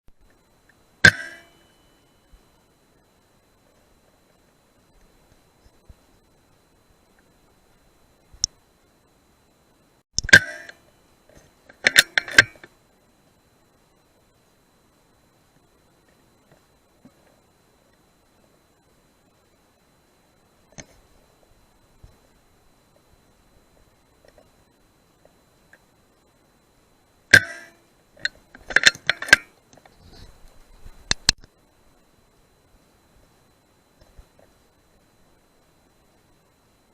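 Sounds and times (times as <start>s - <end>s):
sharp mechanical clicks: 0.2s - 1.7s, 10.2s - 12.7s, 27.3s - 31.5s.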